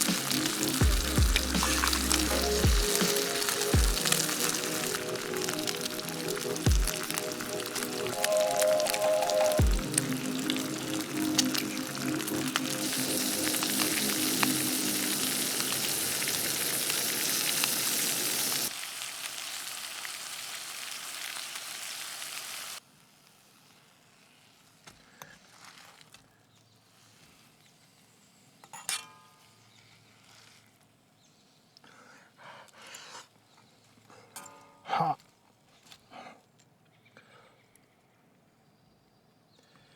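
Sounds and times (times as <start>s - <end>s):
food sizzling in a pan: 0.0s - 24.8s.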